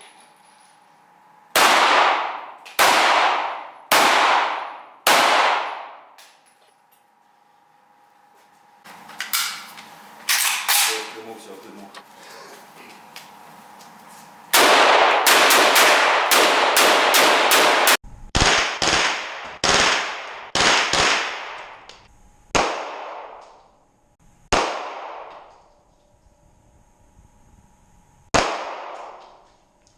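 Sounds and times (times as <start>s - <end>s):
gunshots echoing indoors: 1.5s - 6.2s, 14.5s - 21.9s, 22.6s - 23.6s, 24.5s - 25.7s, 28.3s - 29.6s.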